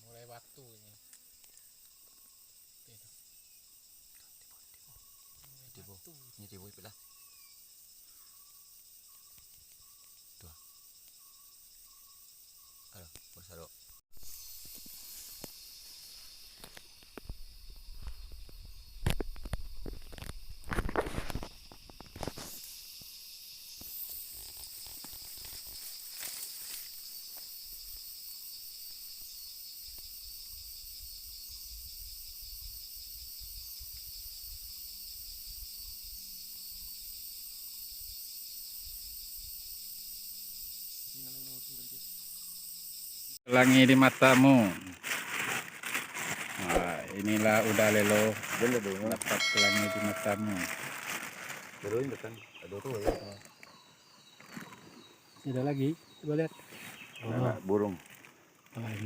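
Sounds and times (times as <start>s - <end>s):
high-pitched insect chorus: 0.0s - 59.0s
rustling: 44.2s - 53.5s.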